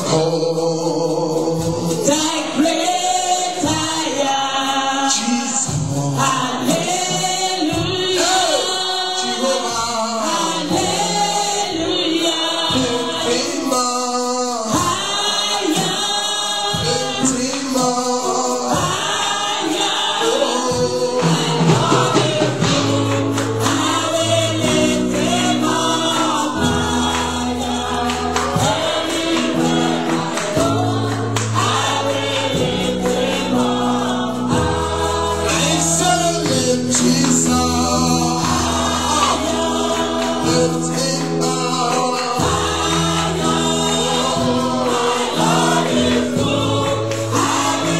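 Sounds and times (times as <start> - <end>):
group singing gospel song: 0.0 - 47.9.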